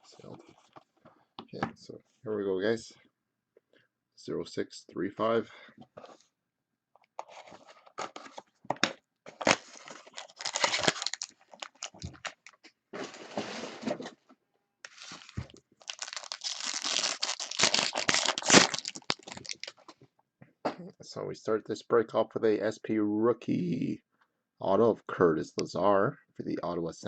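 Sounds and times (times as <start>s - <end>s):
wrapping ripping and crinkling: 9.3s - 12.6s, 14.9s - 19.9s.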